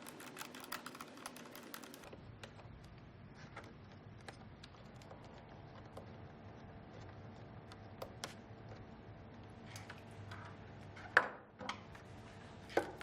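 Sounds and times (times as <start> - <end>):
screwdriver clicking on casing: 0.0 - 2.1.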